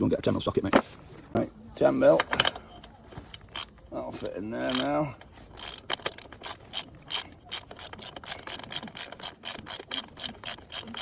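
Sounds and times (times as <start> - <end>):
ratchet clicking: 4.6 - 11.0.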